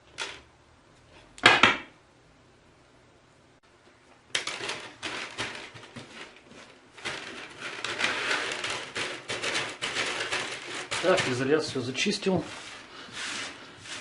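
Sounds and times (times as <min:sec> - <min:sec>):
wire crackly scraping and clicking: 0:04.3 - 0:11.9.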